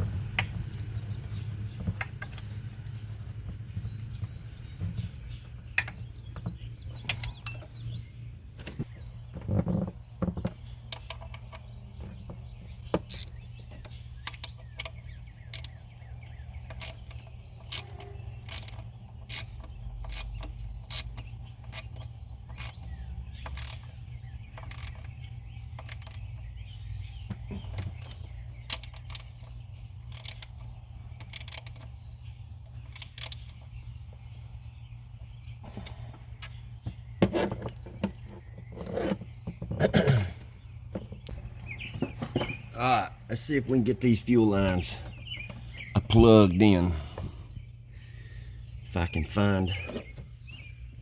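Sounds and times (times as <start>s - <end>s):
steady low hum: 0.0s - 51.0s
hand tools clinking on metal: 6.9s - 7.9s.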